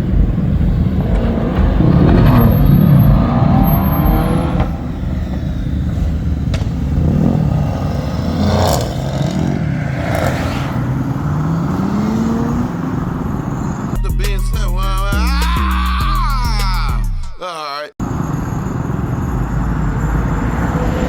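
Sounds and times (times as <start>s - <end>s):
engine revving up: 0.0s - 14.0s
car engine and exhaust rumble: 0.0s - 17.0s, 18.0s - 21.0s.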